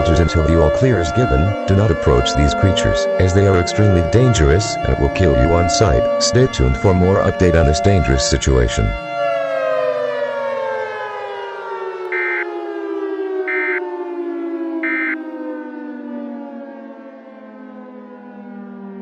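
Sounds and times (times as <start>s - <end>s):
siren winding down: 0.0s - 19.0s
short high beeps: 12.1s - 12.5s, 13.5s - 13.8s, 14.8s - 15.2s.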